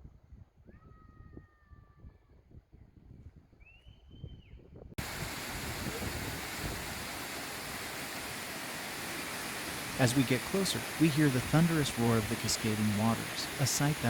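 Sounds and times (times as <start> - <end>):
waterfall rushing: 5.0 - 14.0.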